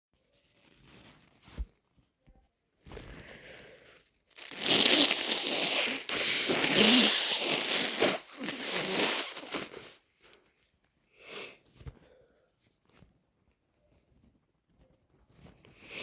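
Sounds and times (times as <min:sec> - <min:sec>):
nasal sniff: 0:04.3 - 0:10.0
person blowing nose: 0:04.3 - 0:10.0.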